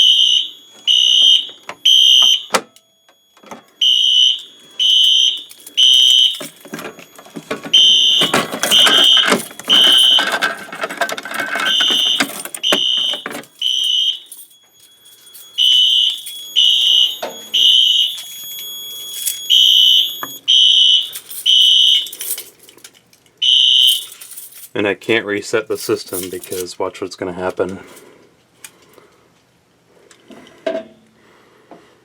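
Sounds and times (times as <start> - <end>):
fire alarm horn blasts: 0.0 - 22.3, 23.4 - 24.2.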